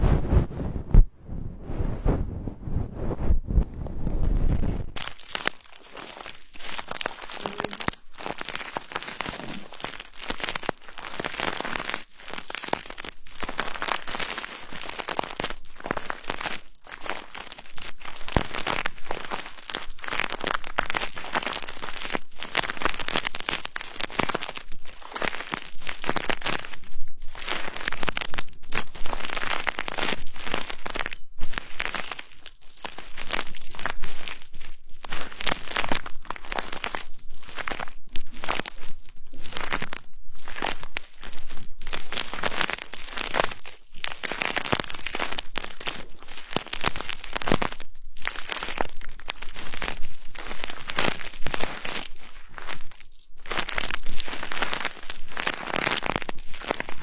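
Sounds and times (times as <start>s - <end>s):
brushing over microphone: 0.0s - 5.0s.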